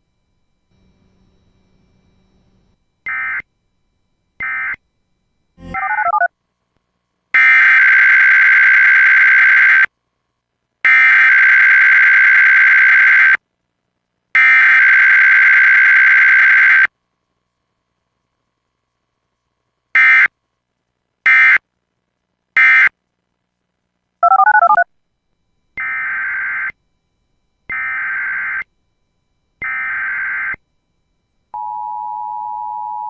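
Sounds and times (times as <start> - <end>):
buzzy digital data bursts: 5.6 - 6.3.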